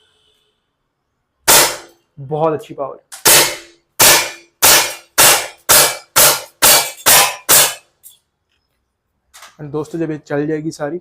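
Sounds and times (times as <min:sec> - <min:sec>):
air pistol shots: 0:01.5 - 0:02.0, 0:03.1 - 0:07.9.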